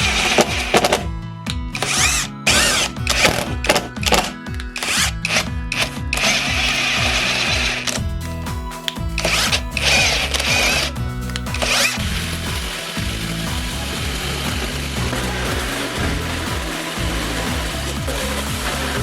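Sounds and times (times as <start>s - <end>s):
background music: 0.0s - 19.0s
power tool running in bursts: 9.2s - 19.0s.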